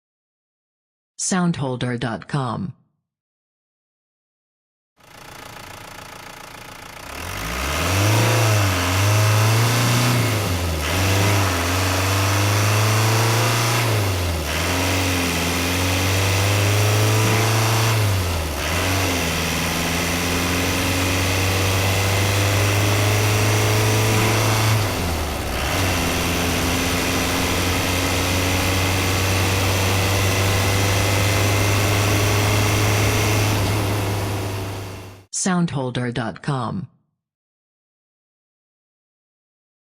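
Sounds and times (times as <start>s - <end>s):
diesel van engine accelerating: 5.0s - 35.3s.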